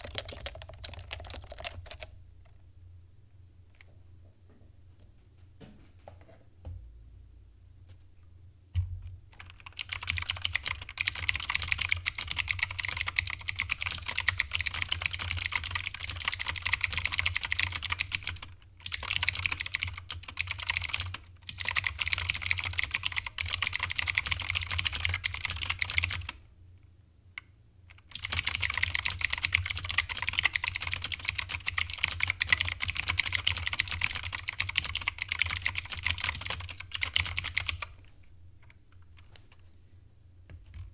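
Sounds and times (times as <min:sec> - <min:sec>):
fast keyboard typing: 0:00.0 - 0:02.2, 0:09.4 - 0:26.4, 0:27.9 - 0:38.0.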